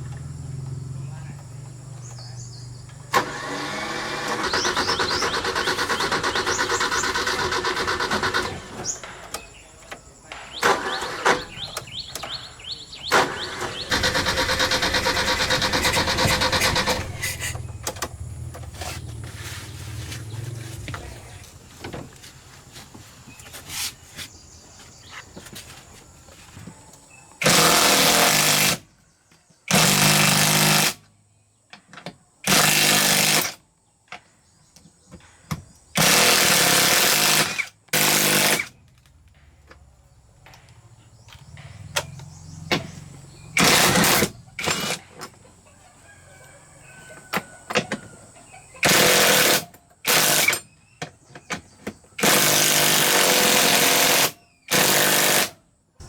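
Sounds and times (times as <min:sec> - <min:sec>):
machinery motor running: 0:00.0 - 0:09.6, 0:10.5 - 0:21.6, 0:41.4 - 0:45.0
power tool bursts: 0:03.0 - 0:09.6, 0:10.5 - 0:18.8, 0:27.4 - 0:28.9, 0:29.7 - 0:31.0, 0:32.4 - 0:33.6, 0:36.0 - 0:38.8, 0:43.5 - 0:45.2, 0:48.8 - 0:50.8, 0:52.2 - 0:55.6.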